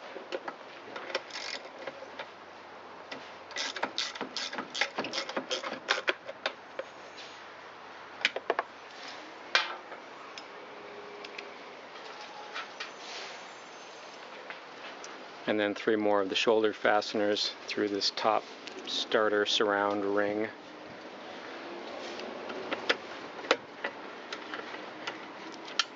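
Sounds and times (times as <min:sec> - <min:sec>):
ratchet wrench clicking: 0:03.5 - 0:05.7.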